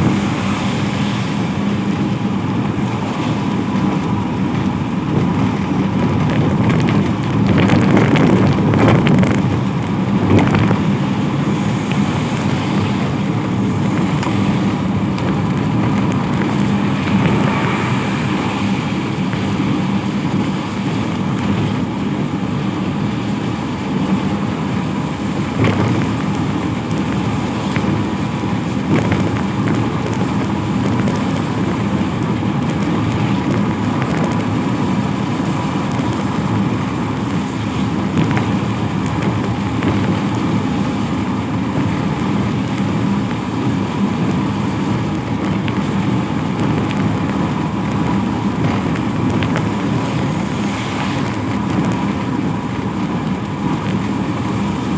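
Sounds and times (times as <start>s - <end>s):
traffic on wet road: 0.0s - 54.9s.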